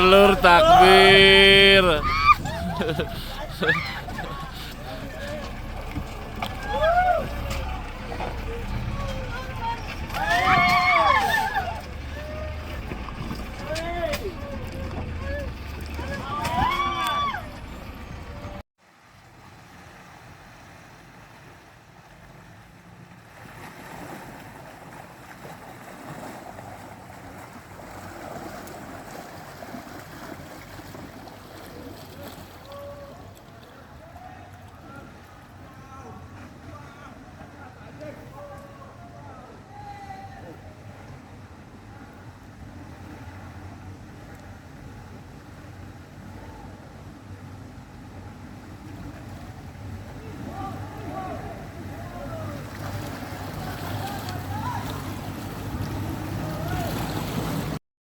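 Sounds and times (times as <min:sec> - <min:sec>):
vehicle engine rumbling: 0:00.0 - 0:18.6
off-road vehicle wind and running: 0:02.0 - 0:18.6, 0:40.8 - 0:57.8
road and wind noise: 0:02.0 - 0:18.6.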